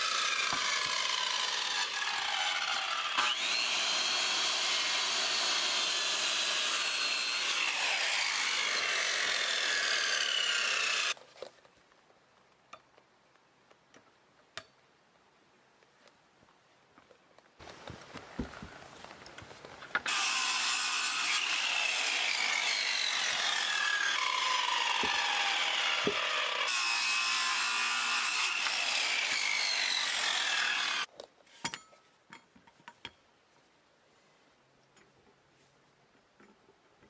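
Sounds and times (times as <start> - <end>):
power saw cutting wood: 0.0 - 11.2, 20.0 - 31.1.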